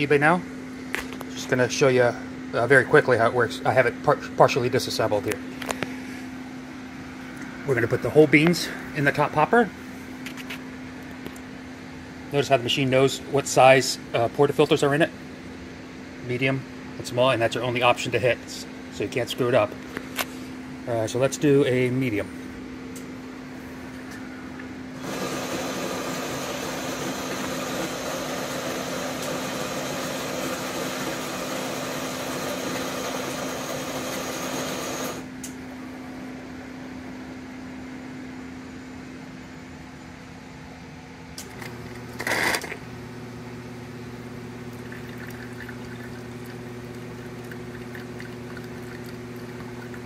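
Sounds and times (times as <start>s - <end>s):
espresso machine hum: 23.4s - 35.9s, 41.4s - 50.0s
coffee grinder running: 25.0s - 35.3s, 41.4s - 42.9s, 44.6s - 50.0s.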